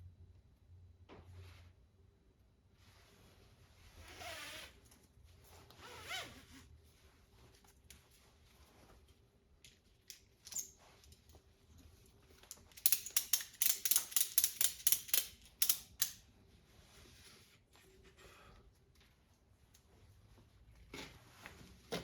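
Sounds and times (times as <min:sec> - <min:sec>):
ratchet strap clicking: 0:12.7 - 0:16.2.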